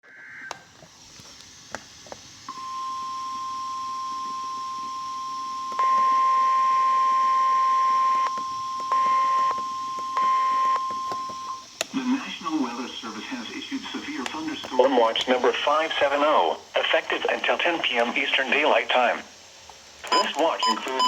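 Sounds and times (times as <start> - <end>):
buzzing alarm beep: 2.5 - 11.7, 20.1 - 21.0
high-pitched warning tone: 2.5 - 11.7.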